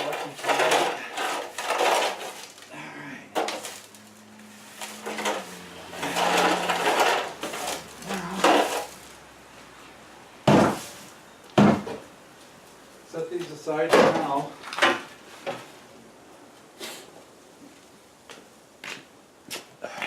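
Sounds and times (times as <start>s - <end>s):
broom scraping grit on concrete: 3.6s - 9.1s.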